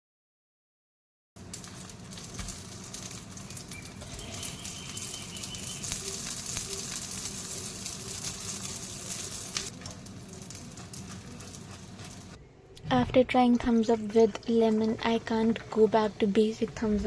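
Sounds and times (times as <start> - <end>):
rice paper rolls sizzling: 1.4 - 12.4.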